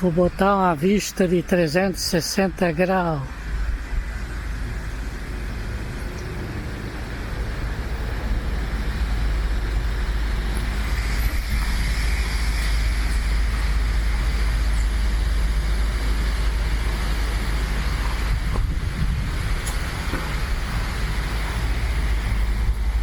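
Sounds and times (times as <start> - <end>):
low rumble of road traffic: 0.0 - 23.0.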